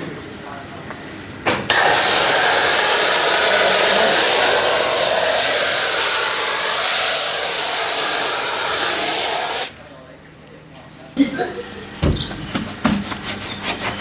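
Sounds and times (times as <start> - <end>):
high-pressure jet hissing: 1.7 - 9.8.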